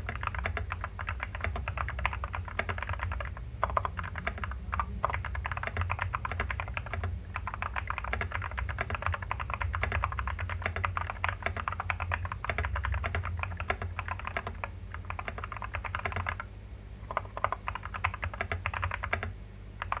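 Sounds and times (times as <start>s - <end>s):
mechanical keyboard typing: 0.0s - 20.0s.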